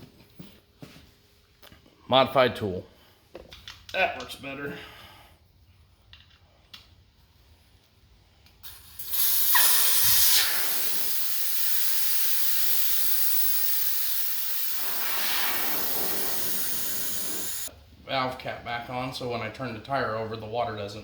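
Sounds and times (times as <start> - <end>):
air hissing out of tire: 8.6 - 17.7.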